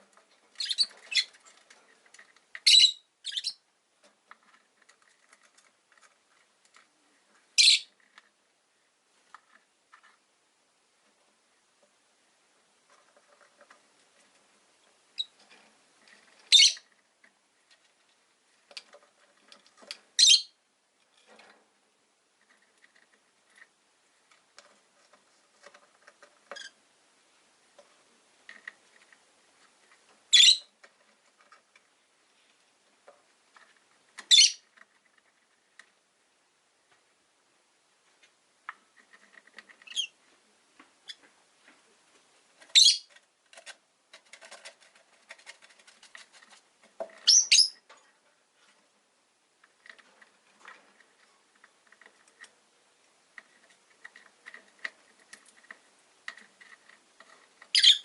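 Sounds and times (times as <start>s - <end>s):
faint clicking and tapping: 0.0s - 2.7s, 3.8s - 20.2s, 20.8s - 57.9s
high-pitched bird calls: 2.6s - 3.6s, 16.5s - 16.8s, 20.2s - 20.6s, 30.4s - 30.7s, 42.8s - 43.1s, 47.3s - 47.8s, 57.7s - 58.0s.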